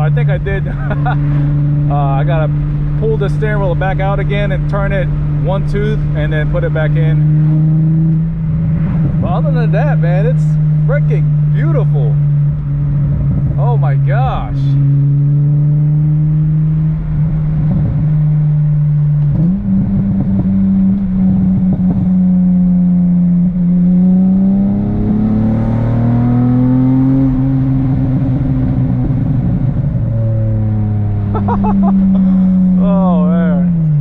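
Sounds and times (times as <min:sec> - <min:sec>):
car engine droning inside cabin: 0:00.0 - 0:34.0.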